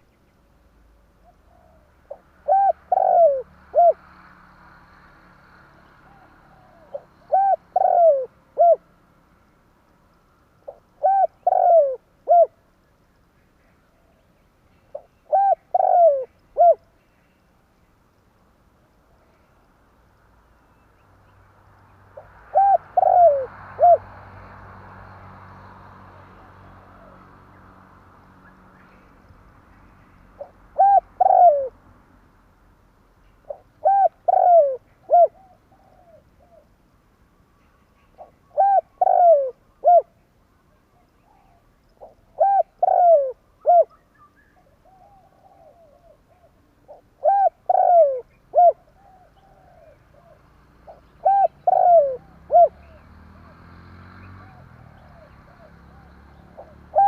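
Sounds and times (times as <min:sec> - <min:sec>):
dove cooing: 0:01.2 - 0:04.0, 0:06.0 - 0:08.9, 0:10.6 - 0:12.6, 0:14.9 - 0:16.8, 0:22.2 - 0:24.1, 0:30.4 - 0:31.8, 0:33.5 - 0:36.7, 0:38.2 - 0:40.2, 0:41.0 - 0:44.0, 0:44.6 - 0:53.0, 0:54.4 - 0:57.0.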